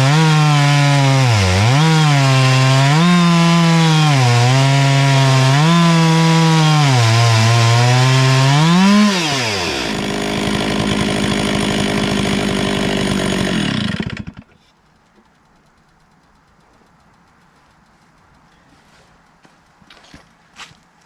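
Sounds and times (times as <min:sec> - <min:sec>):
chainsaw cutting log: 0:00.0 - 0:14.7.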